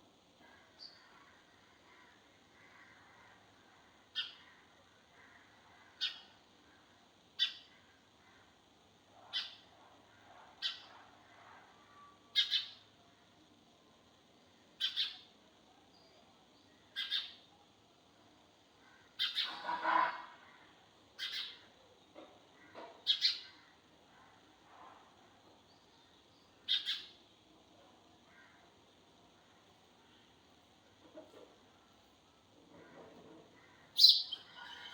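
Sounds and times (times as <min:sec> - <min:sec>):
sparrow chirping: 0:12.4 - 0:12.7, 0:26.7 - 0:27.1, 0:34.0 - 0:34.9.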